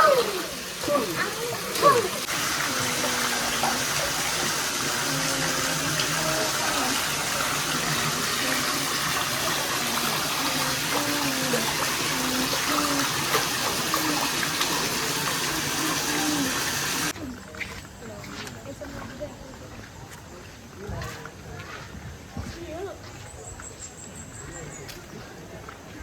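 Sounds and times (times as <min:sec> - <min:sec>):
water pouring and splashing: 0:00.0 - 0:17.2
faint voices: 0:00.0 - 0:26.0.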